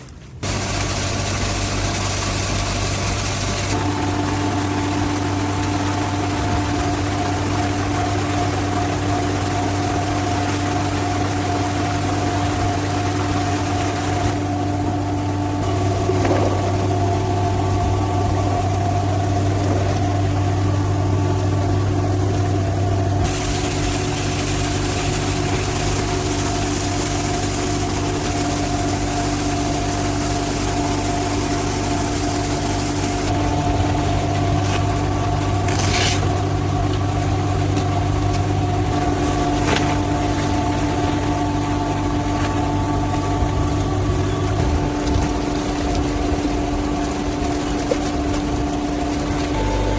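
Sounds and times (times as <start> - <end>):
factory machinery hum and whine: 0.0 - 49.9
broad hiss: 23.3 - 26.3.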